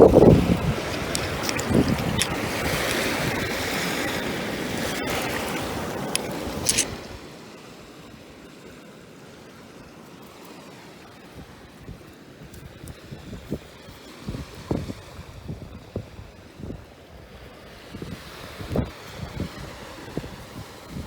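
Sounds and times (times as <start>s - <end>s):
wind buffeting microphone: 0.0s - 7.3s, 11.4s - 21.0s
ocean surf washing on beach: 0.0s - 21.0s
brief crackles: 0.4s - 3.4s, 4.9s - 7.0s.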